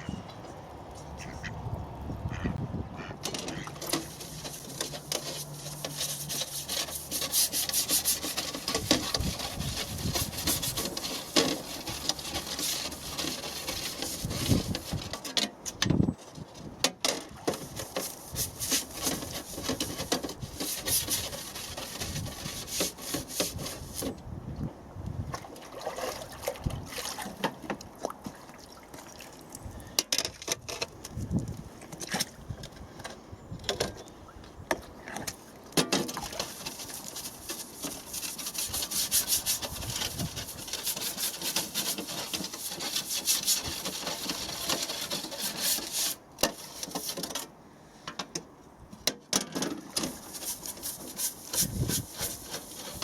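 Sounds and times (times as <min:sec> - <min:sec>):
rubbing and scraping strokes: 0:03.4 - 0:15.4, 0:17.5 - 0:24.2, 0:35.9 - 0:47.5, 0:50.0 - 0:53.0.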